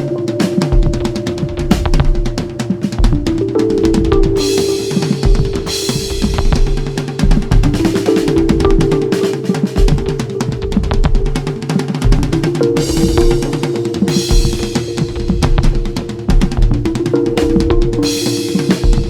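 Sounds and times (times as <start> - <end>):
music with drum beat: 0.0 - 19.0
bass drum: 0.7 - 9.0, 9.8 - 13.7, 14.3 - 18.2
snare drum: 11.3 - 19.0.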